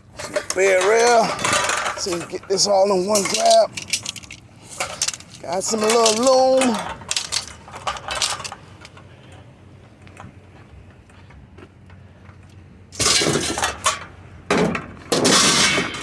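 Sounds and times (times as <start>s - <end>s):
scrap metal clattering: 0.0s - 9.0s, 13.0s - 16.0s.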